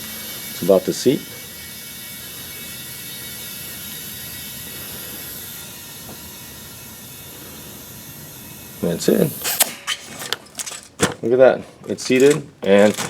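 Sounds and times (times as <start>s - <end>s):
compressed air hissing: 0.0s - 10.2s.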